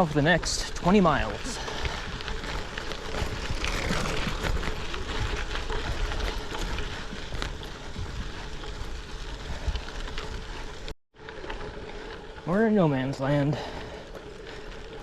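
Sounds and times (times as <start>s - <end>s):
tyres crunching on gravel: 0.0s - 15.0s
bike knocks and rattles: 0.5s - 10.6s.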